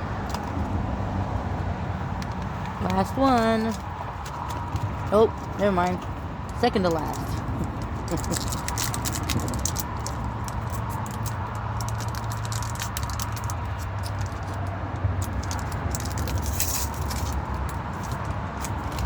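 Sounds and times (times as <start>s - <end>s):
foil wrapper crinkling: 7.0s - 14.6s, 15.2s - 19.0s.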